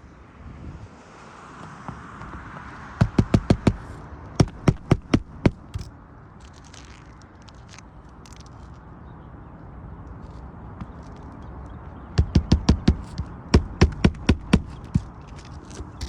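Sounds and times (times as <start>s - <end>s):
hammer striking nails: 4.4s - 5.9s, 12.2s - 15.1s.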